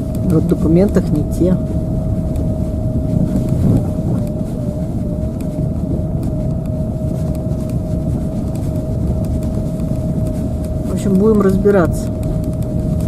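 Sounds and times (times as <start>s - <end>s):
road and engine rumble: 0.0s - 13.0s
thin steady whine: 0.0s - 13.0s.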